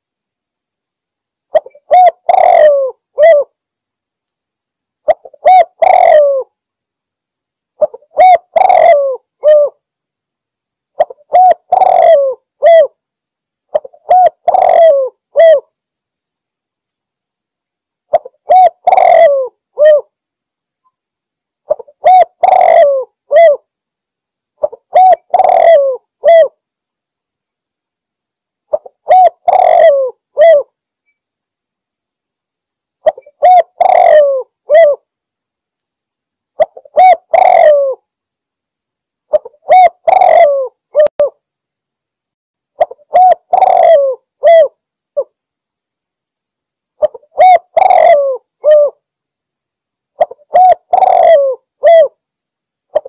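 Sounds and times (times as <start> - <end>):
dove cooing: 1.5 - 3.5, 5.1 - 6.5, 7.8 - 9.8, 11.0 - 13.0, 13.7 - 15.7, 18.1 - 20.1, 21.7 - 23.7, 24.6 - 26.6, 28.7 - 30.7, 33.0 - 35.0, 36.6 - 38.0, 39.3 - 41.4, 42.8 - 45.3, 47.0 - 49.0, 50.2 - 52.2.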